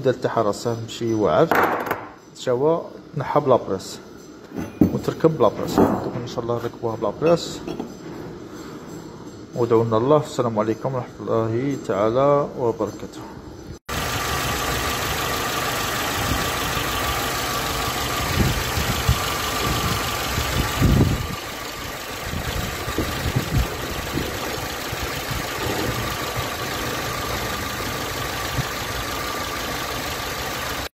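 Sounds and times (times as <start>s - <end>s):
car engine idling: 13.9s - 30.9s.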